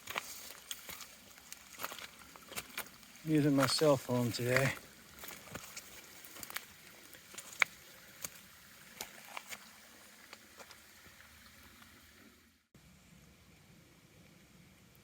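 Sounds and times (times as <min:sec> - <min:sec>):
footsteps on forest trail: 0:00.0 - 0:10.8
faint outdoor hiss: 0:00.0 - 0:15.0.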